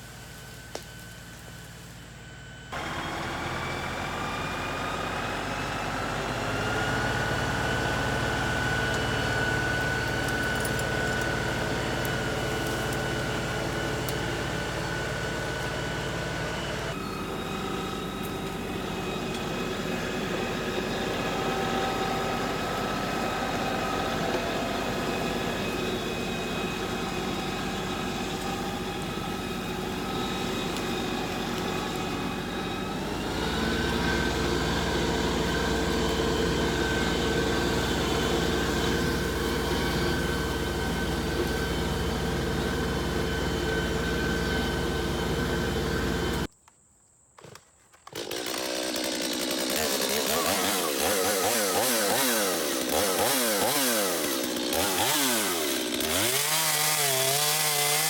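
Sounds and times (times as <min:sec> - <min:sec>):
engine running steadily: 0:00.0 - 0:46.5.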